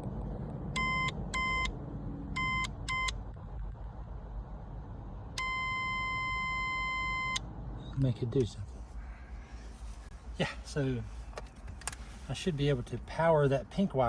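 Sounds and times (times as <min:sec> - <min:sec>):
long electronic beep: 0:00.8 - 0:01.7, 0:05.4 - 0:07.4
short electronic beeps: 0:00.8 - 0:01.7, 0:02.4 - 0:03.2, 0:05.4 - 0:07.4.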